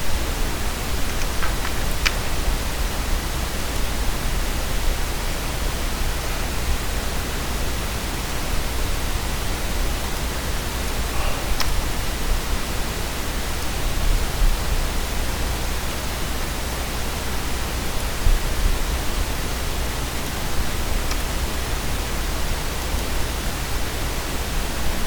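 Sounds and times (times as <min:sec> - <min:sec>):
steady background hiss: 0:00.0 - 0:25.0
faint clicks: 0:01.1 - 0:02.4, 0:11.2 - 0:12.0, 0:21.0 - 0:21.4.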